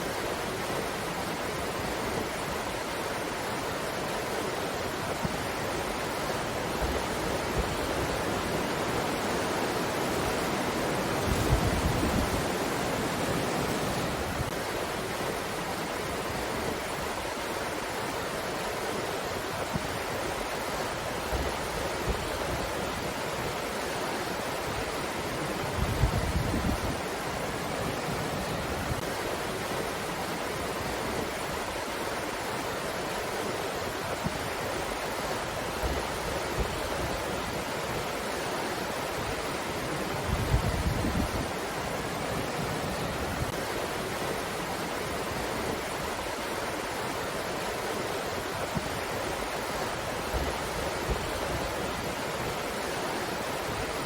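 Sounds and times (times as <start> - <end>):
wind gusts with low rumble: 0.0 - 54.0
wind blowing: 0.2 - 17.1, 34.2 - 54.0.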